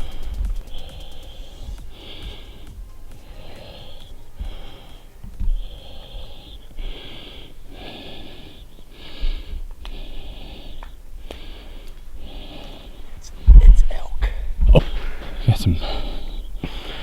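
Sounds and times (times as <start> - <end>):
low thumps: 0.0 - 6.0, 13.2 - 17.0
person breathing hard and wheezily: 0.0 - 17.0.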